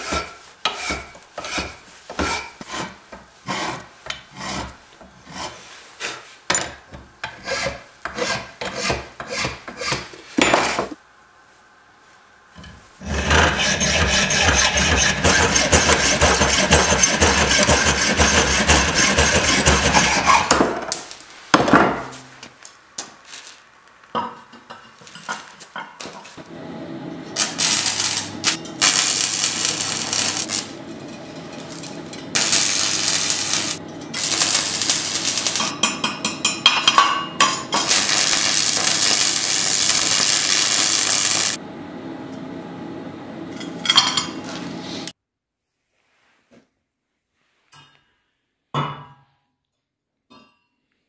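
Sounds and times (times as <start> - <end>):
file rasping on steel blade: 0.0 - 6.2, 7.3 - 10.1, 13.0 - 20.6.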